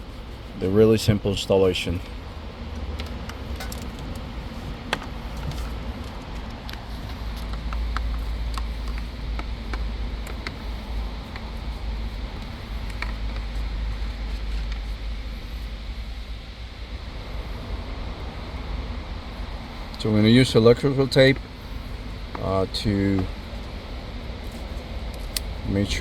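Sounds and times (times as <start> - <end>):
low steady rumble: 0.0 - 26.0
clicks and rustling of wiring: 2.7 - 15.0, 24.4 - 25.8.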